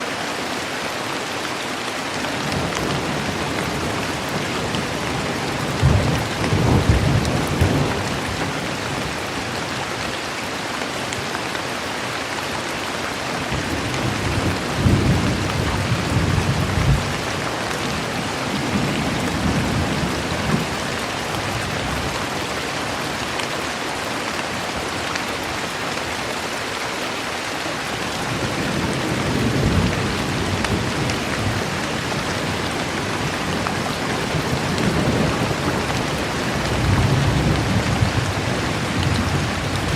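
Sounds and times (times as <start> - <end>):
rain hiss: 0.0 - 39.9
thunder rumbling: 2.4 - 8.6, 13.5 - 22.3, 28.0 - 39.9.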